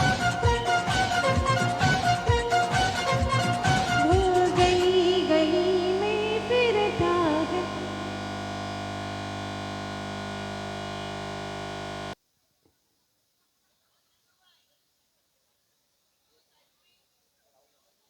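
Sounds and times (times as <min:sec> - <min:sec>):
electronic music beat: 0:00.0 - 0:05.0
held synthesizer chord: 0:00.0 - 0:12.2.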